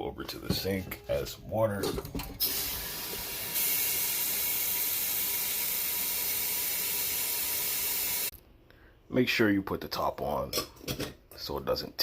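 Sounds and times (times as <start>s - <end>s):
tap water running into kettle: 2.4s - 8.3s.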